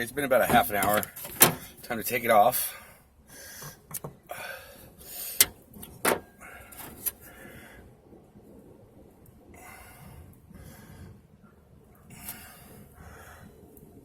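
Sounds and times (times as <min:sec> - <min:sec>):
soft handling noise: 0:00.3 - 0:02.1.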